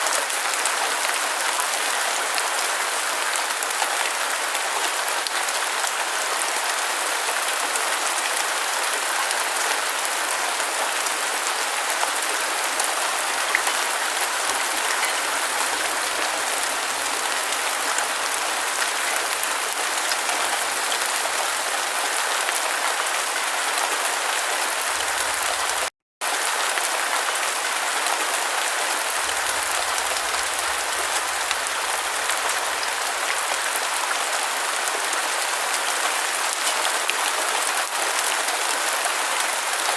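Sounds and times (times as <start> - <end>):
steady rain hiss: 8.6 - 22.6, 24.8 - 35.0.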